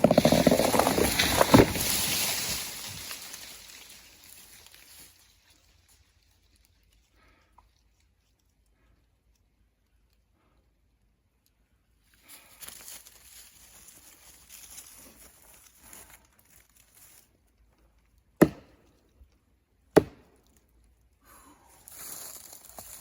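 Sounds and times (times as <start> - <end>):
axe striking wood: 18.4 - 18.8, 19.9 - 20.4.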